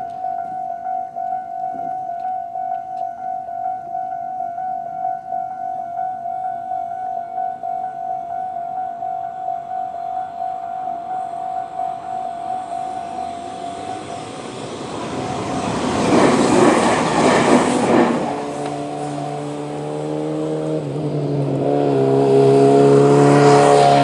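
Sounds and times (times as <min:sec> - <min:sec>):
level crossing warning bell: 0:00.0 - 0:16.1
vehicle tyre and road noise: 0:12.3 - 0:24.0
vehicle engine running: 0:12.4 - 0:24.0.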